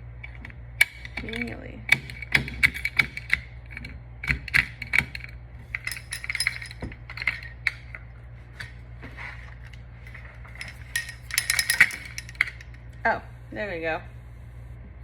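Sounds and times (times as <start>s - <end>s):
small metal parts clicking: 0.2s - 8.8s, 9.6s - 12.8s.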